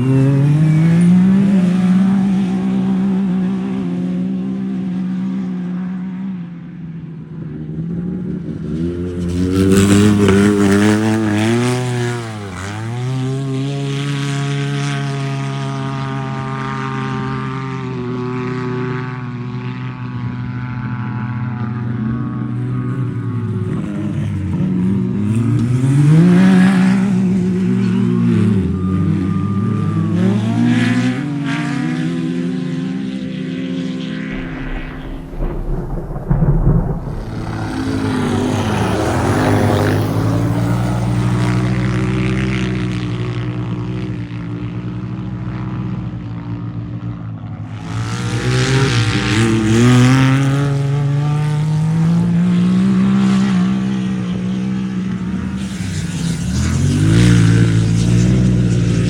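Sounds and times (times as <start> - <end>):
race vehicle engines revving: 0.0 - 5.4, 23.3 - 34.0
loud clatter: 34.4 - 40.8.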